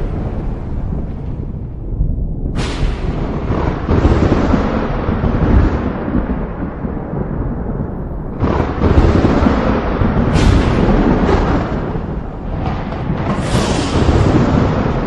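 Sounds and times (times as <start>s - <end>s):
thunder rumbling and cracking: 0.0s - 15.0s.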